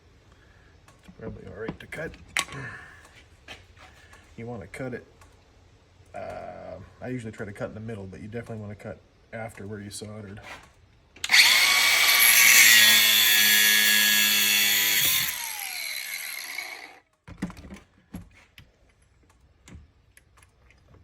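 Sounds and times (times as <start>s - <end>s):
grinder cutting steel cable: 11.2s - 17.0s.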